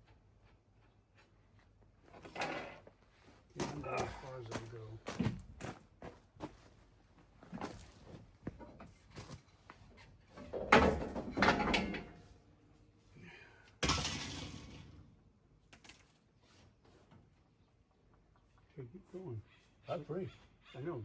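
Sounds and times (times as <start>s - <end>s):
loud metal clank: 13.8s - 15.0s.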